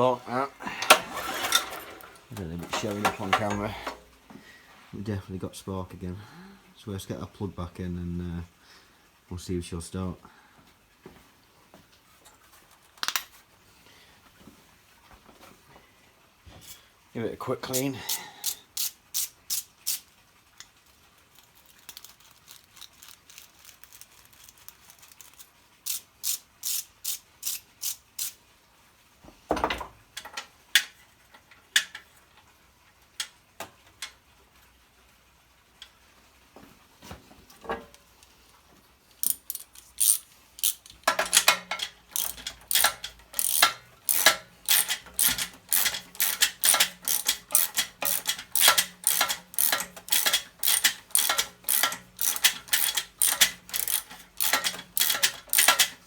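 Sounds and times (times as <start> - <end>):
ratchet wrench clicking: 25.2 - 28.3, 39.2 - 56.0.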